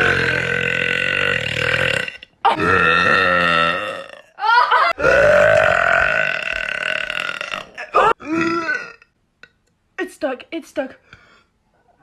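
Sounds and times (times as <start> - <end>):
woman burping: 0.0 - 9.6.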